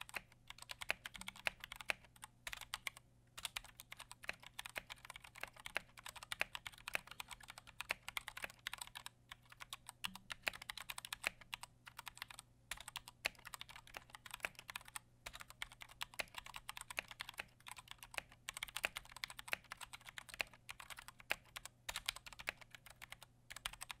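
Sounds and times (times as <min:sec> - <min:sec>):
mechanical keyboard typing: 0:00.0 - 0:24.0.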